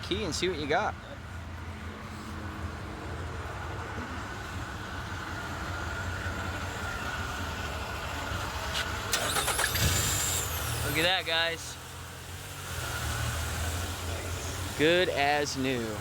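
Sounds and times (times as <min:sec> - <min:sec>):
car engine running: 0:04.6 - 0:16.0.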